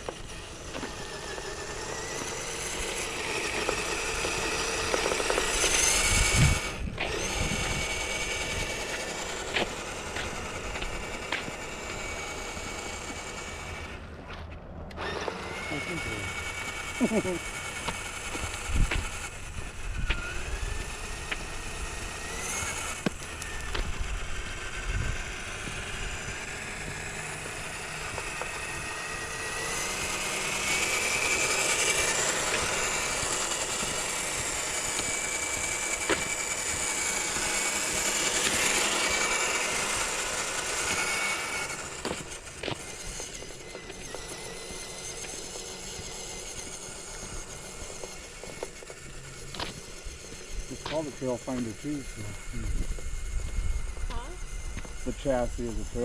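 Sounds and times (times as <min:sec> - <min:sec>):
toy truck motor whining: 0:00.0 - 0:56.0.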